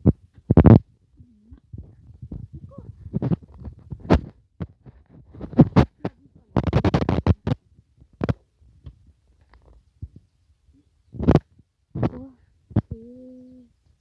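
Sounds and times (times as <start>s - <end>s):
digging thuds and scrapes in soil: 1.7s - 9.1s.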